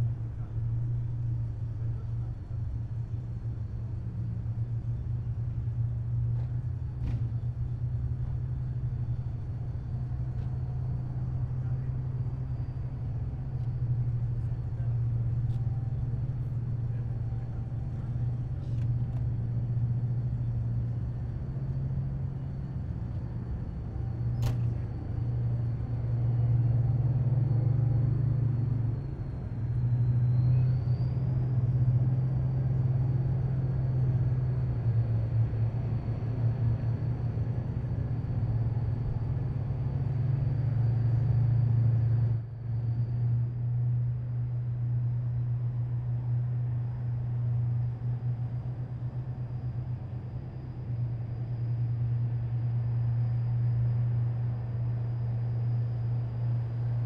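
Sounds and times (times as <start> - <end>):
heavy vehicle engines droning: 0.0 - 57.0
faint high whine: 7.2 - 57.0.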